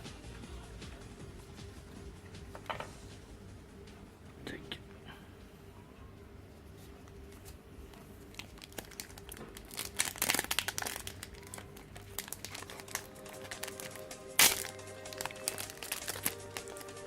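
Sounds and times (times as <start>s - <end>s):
plastic foil wrapper crinkling: 8.2s - 17.0s.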